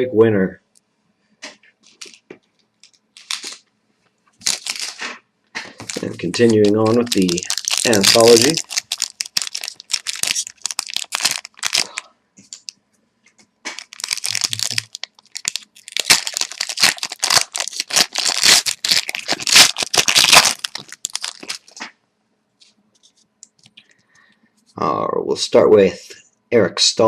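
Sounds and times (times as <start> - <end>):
wrapper crinkled and torn open: 1.9 - 2.2, 2.8 - 3.6, 4.4 - 5.0, 5.7 - 12.7, 13.7 - 21.8.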